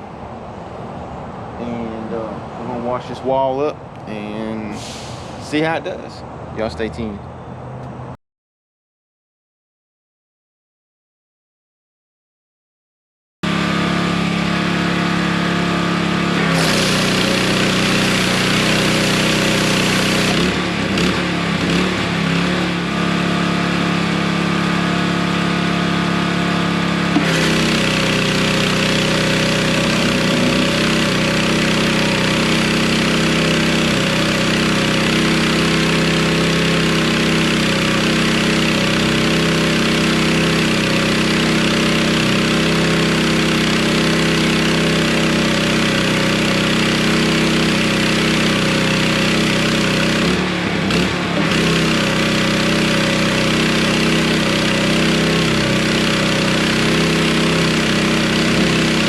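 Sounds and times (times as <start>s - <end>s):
small engine running: 13.4s - 59.0s.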